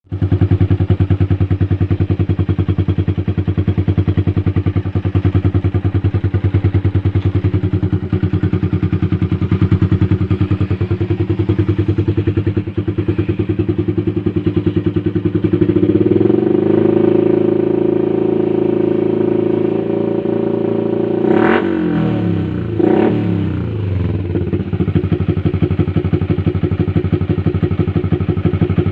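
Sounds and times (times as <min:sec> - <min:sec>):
motorcycle engine idling and revving: 0:00.0 - 0:28.9.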